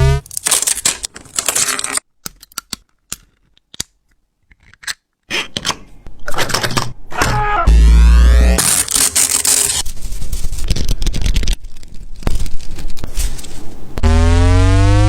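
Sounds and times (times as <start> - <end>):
small hard objects clattering: 0.2 - 2.1
rising swept tone: 14.0 - 15.0.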